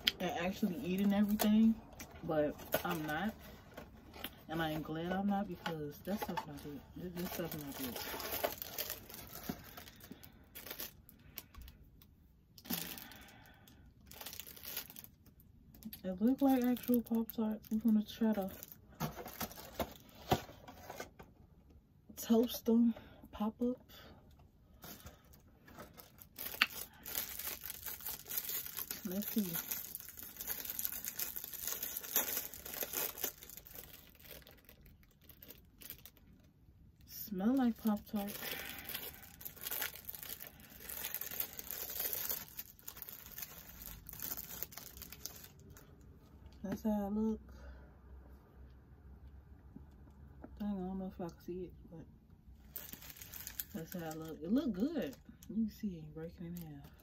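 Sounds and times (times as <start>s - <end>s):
food packaging crinkling: 0.0s - 11.8s, 12.6s - 21.1s, 24.8s - 36.5s, 37.5s - 46.0s, 52.7s - 55.2s
packaging tearing: 6.1s - 11.5s, 14.1s - 15.1s, 25.8s - 36.2s, 38.1s - 45.8s, 52.8s - 54.0s.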